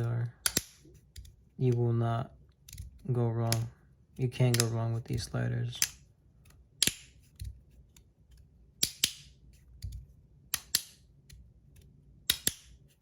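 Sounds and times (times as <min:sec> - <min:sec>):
plastic slider clicks: 0:04.5 - 0:04.7.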